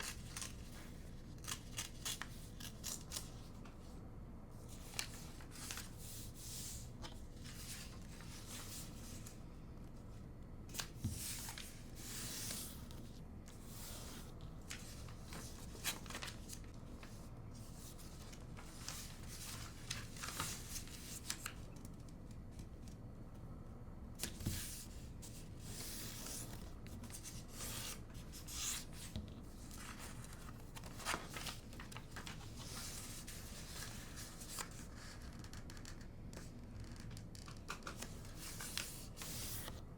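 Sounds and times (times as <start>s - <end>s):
paper rustling and crinkling: 10.7s - 23.0s, 24.2s - 39.8s.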